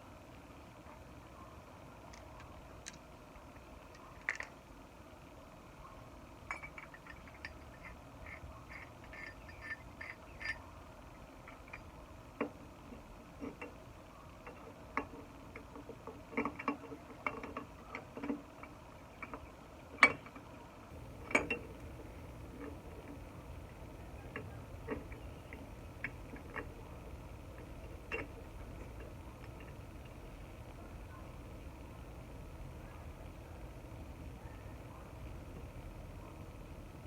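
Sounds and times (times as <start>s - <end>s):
metal tools clinking: 6.5s - 10.7s, 21.0s - 30.2s.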